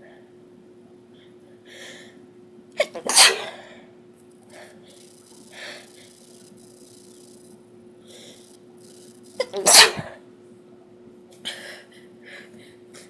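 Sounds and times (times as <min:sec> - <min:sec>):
person sneezing: 0:02.8 - 0:03.6, 0:09.4 - 0:10.2.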